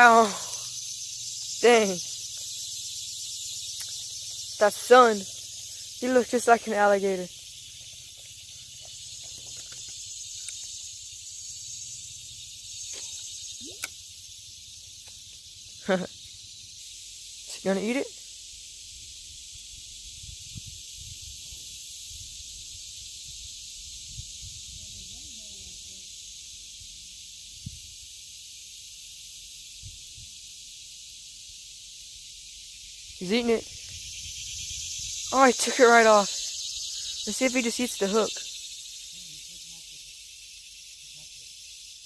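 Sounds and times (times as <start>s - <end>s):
insects chorus: 0.0s - 42.0s
wind rumbling on microphone: 19.0s - 25.6s, 33.4s - 35.3s.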